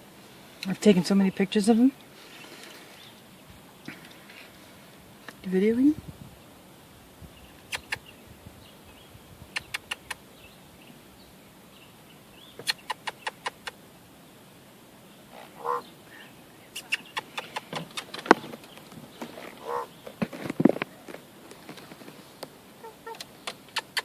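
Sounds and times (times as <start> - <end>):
raven clicking calls: 7.6 - 8.1, 9.5 - 10.3, 12.5 - 13.8, 15.3 - 16.0, 16.8 - 20.2, 22.8 - 24.0
short low raven call: 15.3 - 16.2, 19.6 - 19.9, 22.8 - 23.2.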